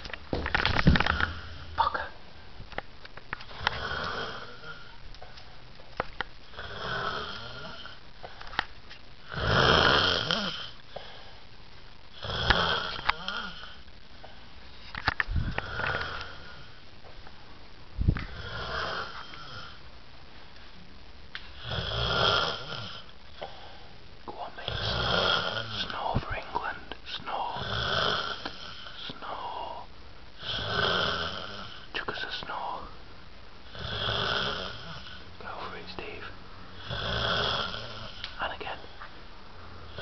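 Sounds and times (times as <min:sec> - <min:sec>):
person snoring: 0:00.8 - 0:02.2, 0:03.5 - 0:05.0, 0:06.5 - 0:08.0, 0:09.2 - 0:11.0, 0:12.1 - 0:13.8, 0:15.4 - 0:16.8, 0:18.3 - 0:19.8, 0:21.6 - 0:23.1, 0:24.6 - 0:26.0, 0:27.4 - 0:29.8, 0:30.4 - 0:31.9, 0:33.7 - 0:35.2, 0:36.8 - 0:38.8.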